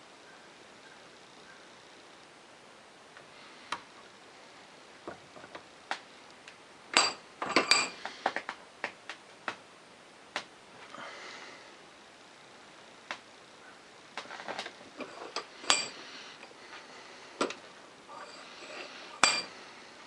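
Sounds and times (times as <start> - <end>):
metal tools clinking on workbench: 7.0 - 8.0, 14.3 - 16.0, 18.2 - 19.6.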